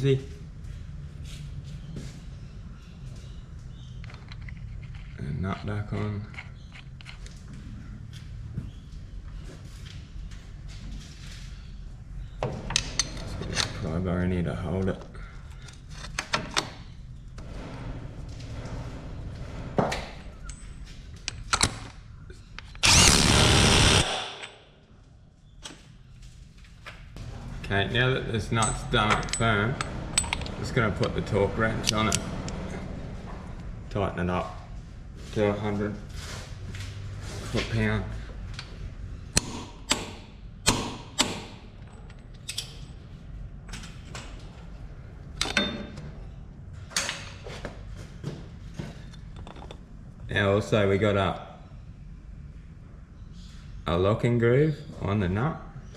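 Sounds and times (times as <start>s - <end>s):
impact wrench burst: 22.8s - 24.6s, 39.4s - 41.7s
metal tools clanking: 28.4s - 32.8s.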